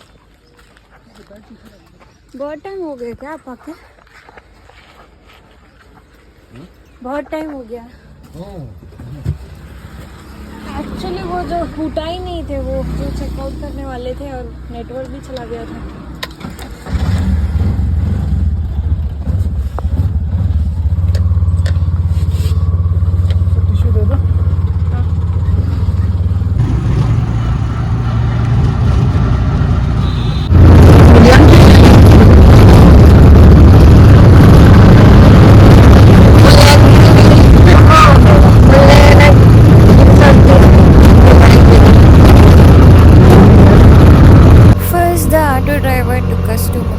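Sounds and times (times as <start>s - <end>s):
auto-rickshaw engine running: 8.4s - 46.9s
wind rumble on microphone: 30.5s - 44.8s.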